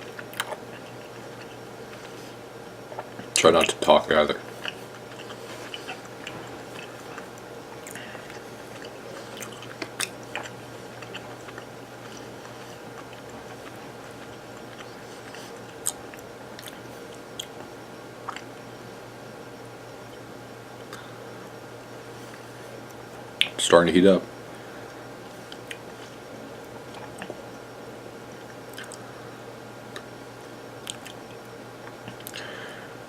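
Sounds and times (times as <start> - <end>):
person chewing: 0.0 - 3.8, 4.4 - 18.6, 25.4 - 27.4, 28.4 - 29.0, 30.8 - 31.2
steady low hum: 0.0 - 33.0.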